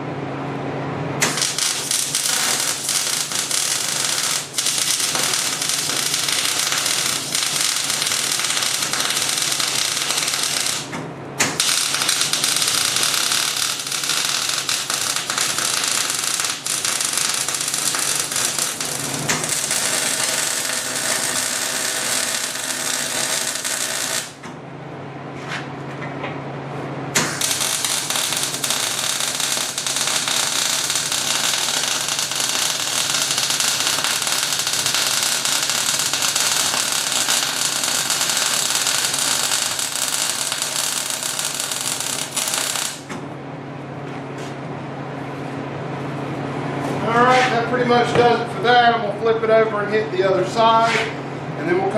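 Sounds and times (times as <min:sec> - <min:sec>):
arc welding crackle: 0:01.2 - 0:24.4, 0:27.2 - 0:43.1
welding machine hum: 0:01.2 - 0:24.6, 0:27.0 - 0:43.4.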